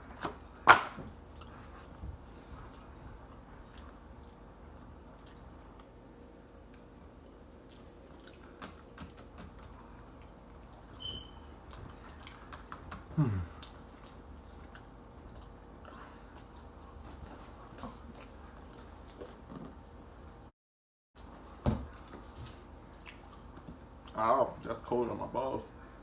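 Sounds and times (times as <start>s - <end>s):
chewing and biting food: 2.6s - 10.9s, 11.7s - 20.4s, 22.8s - 24.8s.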